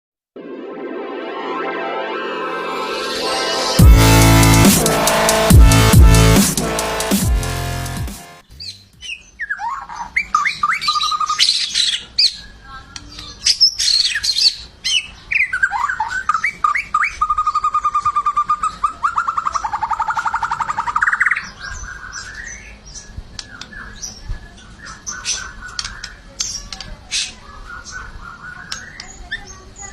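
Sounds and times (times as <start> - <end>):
songbird singing whistled phrases: 8.6 - 22.8, 27.6 - 29.9.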